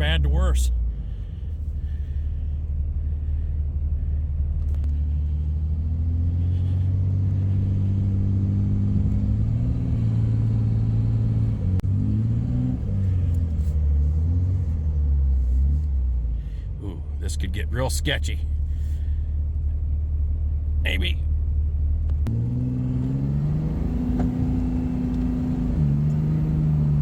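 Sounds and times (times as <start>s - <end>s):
vehicle engine revving under load: 4.6s - 17.2s, 22.1s - 27.0s.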